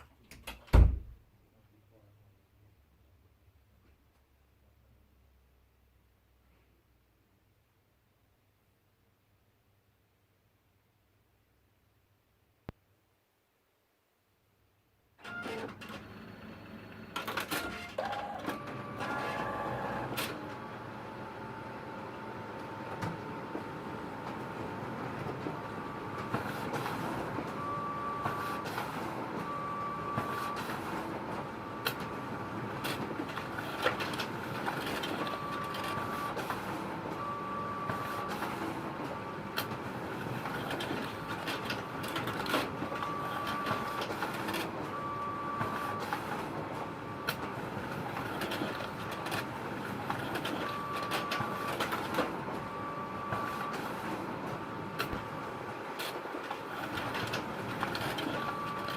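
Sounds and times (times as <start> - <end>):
photocopier whirring: 15.2 - 58.9.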